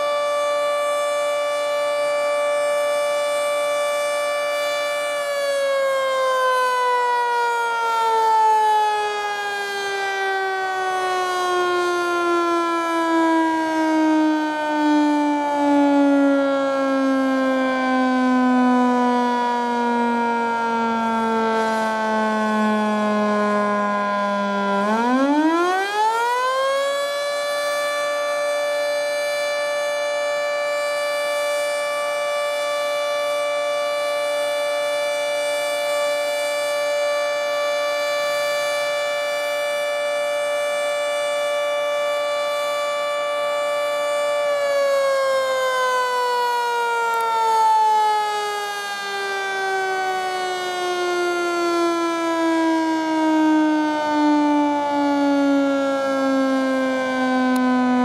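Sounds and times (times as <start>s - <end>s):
warning siren winding: 0.0s - 58.0s.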